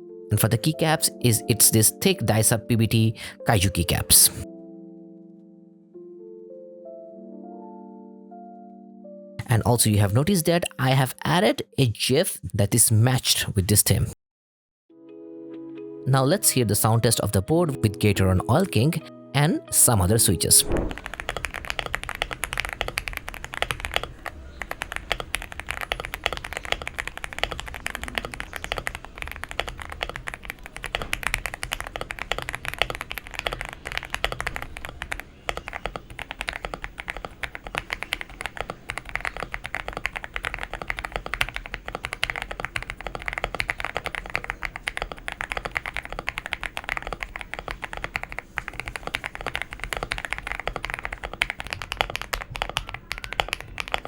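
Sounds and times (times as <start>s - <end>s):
mechanical keyboard typing: 17.8s - 54.0s.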